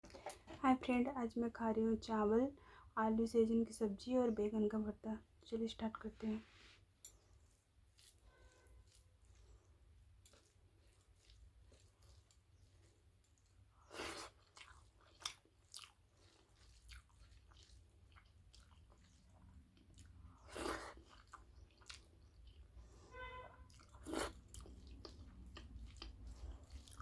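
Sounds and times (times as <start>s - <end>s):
quiet chewing: 6.9s - 27.0s.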